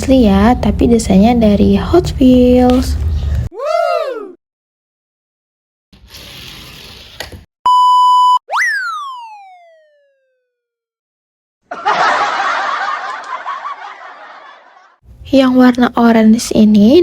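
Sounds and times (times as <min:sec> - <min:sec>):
buzzy electronic beep: 0:07.7 - 0:10.0
tone gliding down in pitch: 0:07.7 - 0:10.4.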